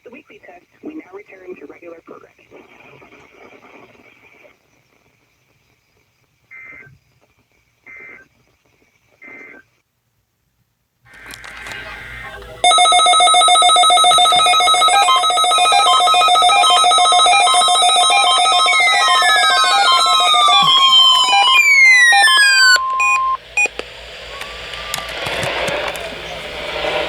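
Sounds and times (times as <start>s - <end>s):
electronic alarm beeps: 11.2s - 27.0s
falling alarm tones: 11.2s - 27.0s.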